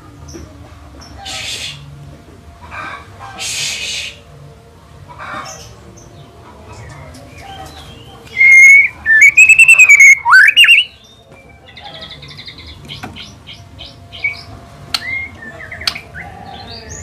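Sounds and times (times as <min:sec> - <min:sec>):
bird rapid chirps and clicks: 0:08.3 - 0:10.9
bird singing whistled phrases: 0:08.3 - 0:11.0.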